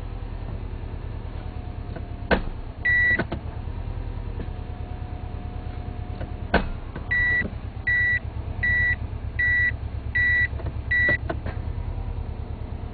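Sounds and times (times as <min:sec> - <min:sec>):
reverse warning beeper: 0:02.9 - 0:03.2, 0:07.1 - 0:11.2
car engine idling: 0:06.1 - 0:12.9
metallic clunk of gear selector: 0:10.5 - 0:11.6.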